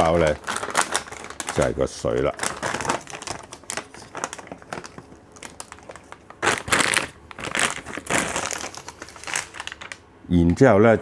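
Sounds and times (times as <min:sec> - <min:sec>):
plastic bag crinkling: 0:00.0 - 0:10.1.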